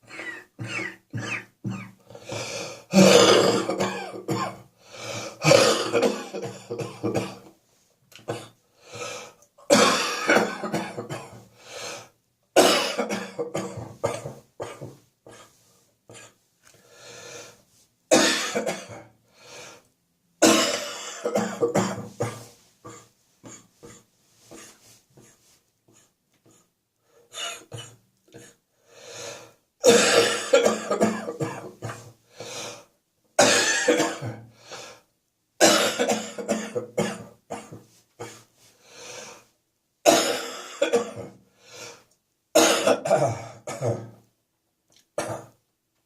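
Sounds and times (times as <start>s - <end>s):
person coughing: 0.0s - 4.6s, 5.3s - 7.5s, 9.7s - 11.4s, 12.6s - 16.4s, 18.1s - 19.1s, 20.4s - 25.4s, 27.3s - 28.6s, 29.8s - 32.1s, 33.4s - 34.5s, 35.6s - 38.4s, 40.1s - 41.4s, 42.6s - 44.2s, 45.2s - 45.6s.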